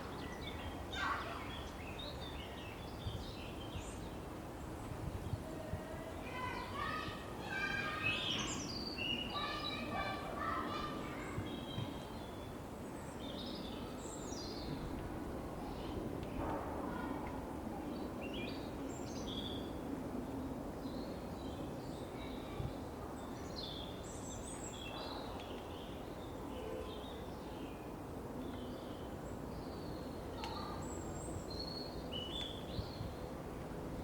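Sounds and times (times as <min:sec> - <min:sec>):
small birds chirping: 0:06.2 - 0:15.0, 0:20.8 - 0:33.3.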